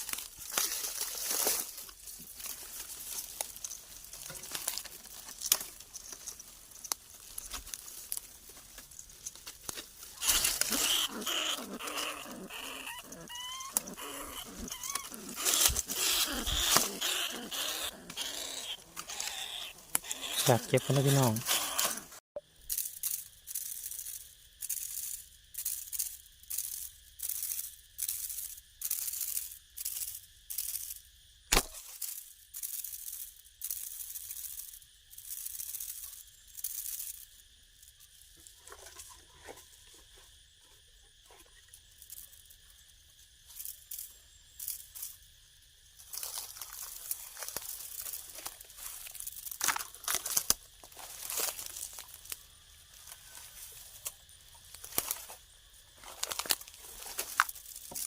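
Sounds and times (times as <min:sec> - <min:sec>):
sharp click: 0:31.5 - 0:31.8.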